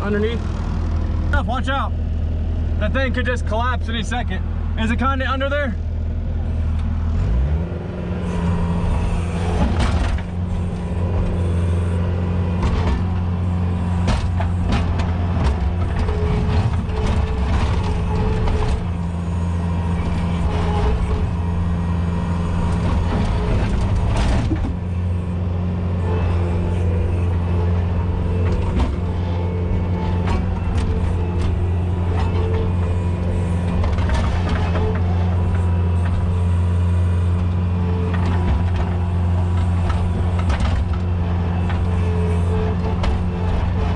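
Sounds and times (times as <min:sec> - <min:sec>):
skid steer engine running: 0:00.0 - 0:43.9.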